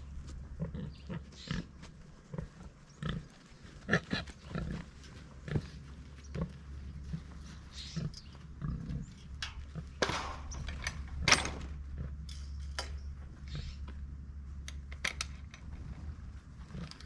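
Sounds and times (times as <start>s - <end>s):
metal gate clanking and rattling: 9.2s - 13.2s.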